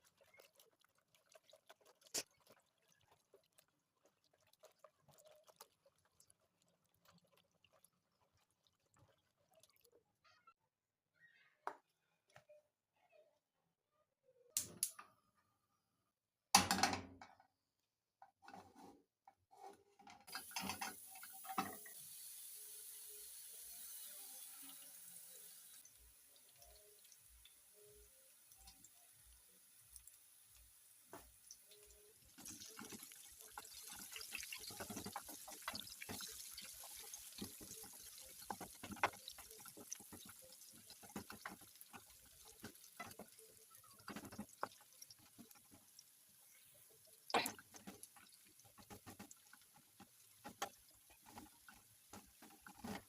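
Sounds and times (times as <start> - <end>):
water running into a bowl: 0.0 - 10.0, 20.3 - 53.0
water splashing and swishing: 0.0 - 10.0.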